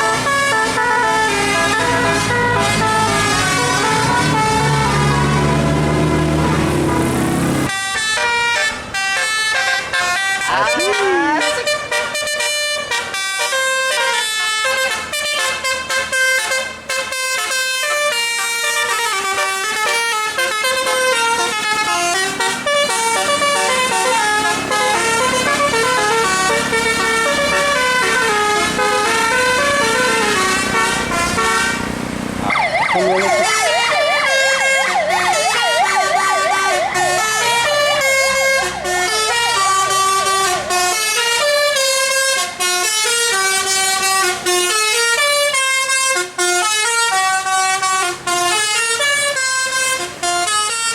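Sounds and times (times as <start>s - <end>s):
musical air horn tune: 0.0s - 50.9s
warbling siren-like wail: 0.4s - 7.7s, 32.4s - 39.9s.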